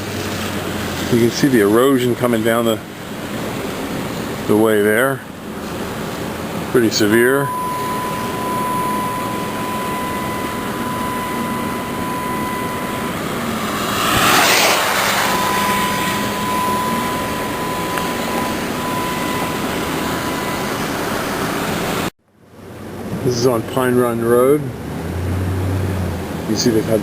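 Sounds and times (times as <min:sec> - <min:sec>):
road and engine noise in car: 0:00.0 - 0:27.0
thin high whine: 0:06.7 - 0:22.1
loud whoosh: 0:06.8 - 0:21.2.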